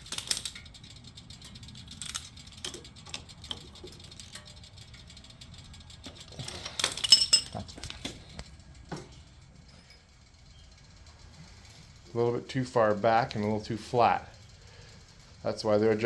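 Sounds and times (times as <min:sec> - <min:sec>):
metal hand tools clinking: 0:06.2 - 0:08.2.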